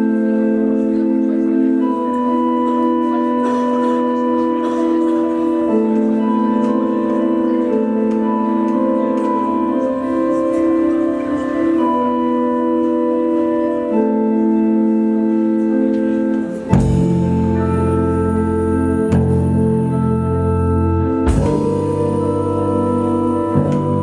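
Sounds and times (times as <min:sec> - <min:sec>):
organ-style keyboard chords: 0:00.0 - 0:24.0
low bass line: 0:05.7 - 0:24.0.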